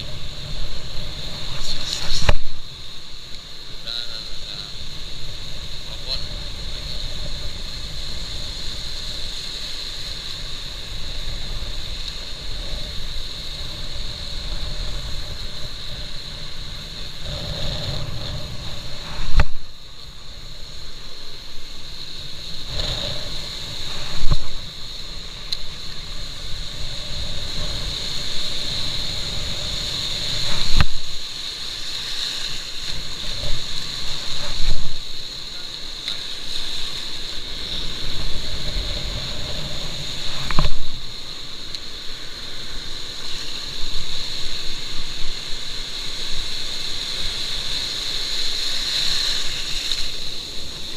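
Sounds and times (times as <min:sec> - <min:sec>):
wind buffeting microphone: 0:32.0 - 0:47.8.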